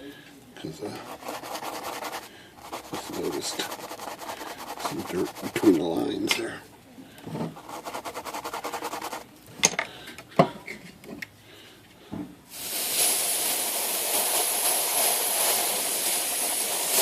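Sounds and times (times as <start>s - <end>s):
aerosol can spraying: 1.1s - 5.8s, 12.5s - 17.0s.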